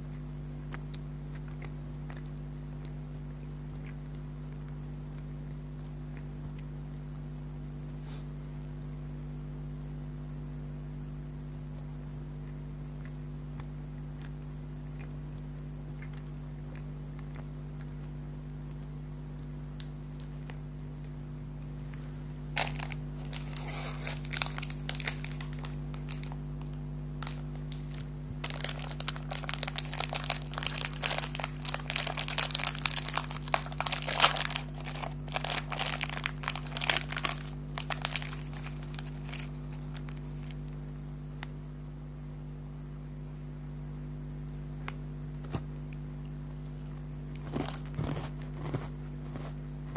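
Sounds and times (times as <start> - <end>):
low electrical hum: 0.0 - 49.9
snack packaging crinkling: 22.5 - 40.8, 46.8 - 49.9.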